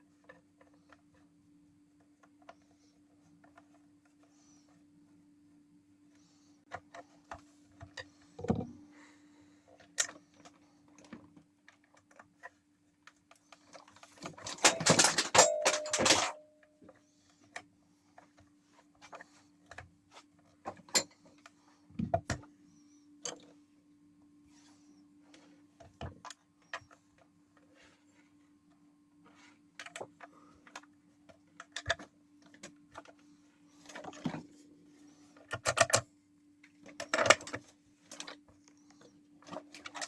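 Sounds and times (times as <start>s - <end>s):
plastic parts clicking: 9.8s - 18.4s, 29.8s - 33.2s, 35.4s - 40.0s.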